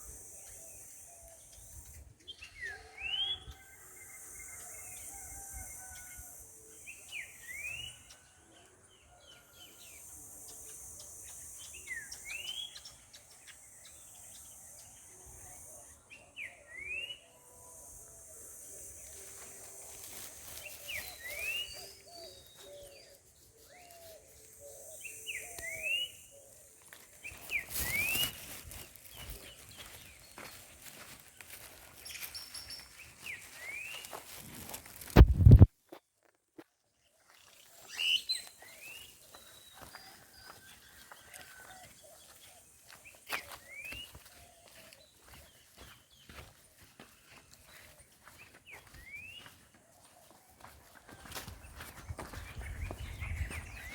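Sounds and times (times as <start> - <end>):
crackling rustle: 27.4 - 35.7.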